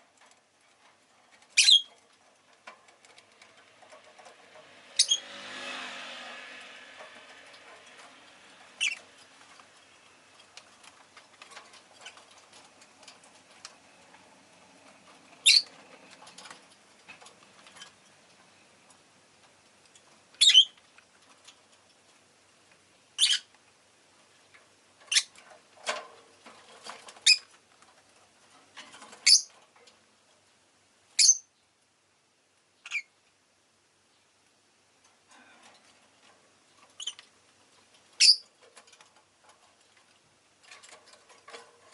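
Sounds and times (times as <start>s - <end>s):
faint ticks and rustles: 0.0s - 5.0s, 6.3s - 41.9s
bird chirping high-pitched: 1.6s - 1.9s, 5.0s - 5.2s, 8.8s - 9.0s, 15.4s - 15.7s, 20.4s - 20.8s, 23.2s - 23.5s, 29.2s - 29.5s, 31.2s - 31.5s, 32.8s - 33.1s, 38.2s - 38.4s.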